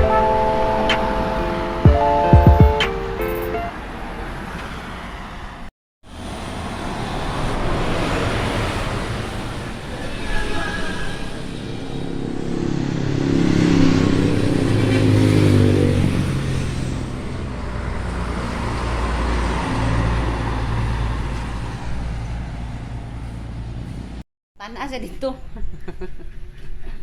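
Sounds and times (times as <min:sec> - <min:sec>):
vehicle engine rumbling: 0:06.2 - 0:24.2.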